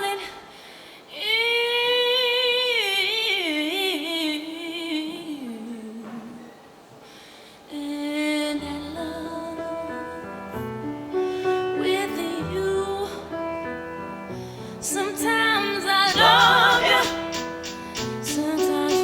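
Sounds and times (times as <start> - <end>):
woman singing slow song: 0.0 - 6.8, 7.6 - 10.6, 11.4 - 13.9, 14.8 - 19.0
crisp ticking beat: 16.1 - 19.0.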